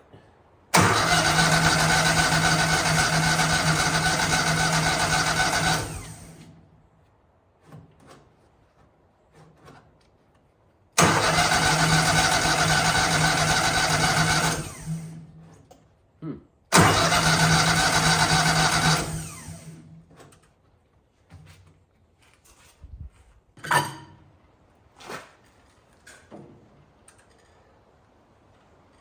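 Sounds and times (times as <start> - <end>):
engine cranking on starter: 0.7 - 6.5, 11.0 - 15.2, 16.7 - 19.9.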